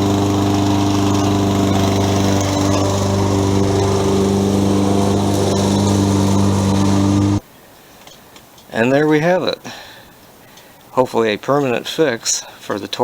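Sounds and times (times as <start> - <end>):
lawn mower engine running: 0.0 - 7.4.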